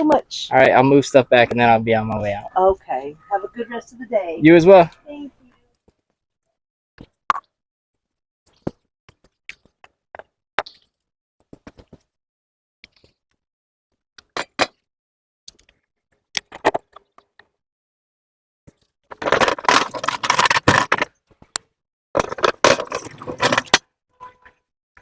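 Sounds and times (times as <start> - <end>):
gear rattling and scraping: 19.1 - 21.1, 22.2 - 23.8.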